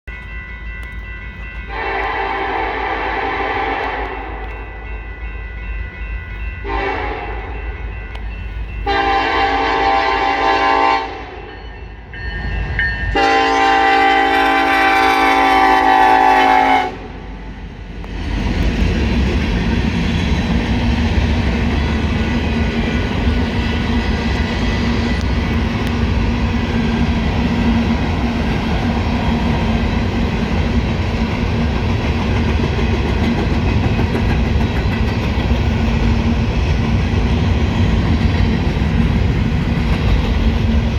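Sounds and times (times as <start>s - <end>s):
diesel locomotive and train rumbling: 0.0s - 40.9s
train horn blasts: 1.7s - 4.6s, 6.6s - 7.6s, 8.8s - 11.5s, 13.1s - 17.3s.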